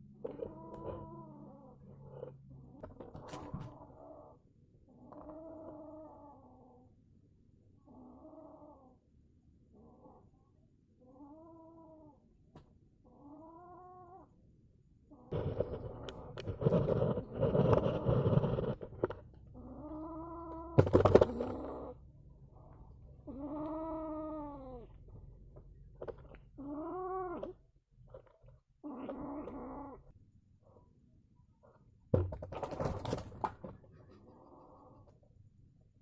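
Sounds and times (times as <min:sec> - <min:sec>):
kitten growling: 0:00.0 - 0:06.9, 0:07.8 - 0:09.0, 0:11.0 - 0:12.2, 0:13.0 - 0:14.3, 0:15.1 - 0:30.1, 0:34.0 - 0:35.2.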